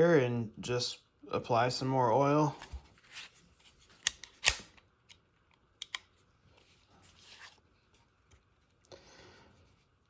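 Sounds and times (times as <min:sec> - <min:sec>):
pistol slide clacking: 0:04.0 - 0:04.7.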